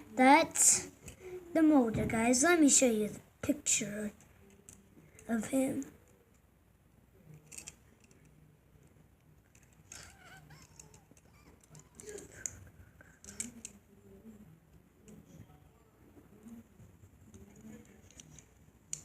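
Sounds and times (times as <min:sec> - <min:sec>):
plastic lego pieces clicking: 0:07.3 - 0:08.4, 0:09.4 - 0:12.6, 0:13.2 - 0:13.8.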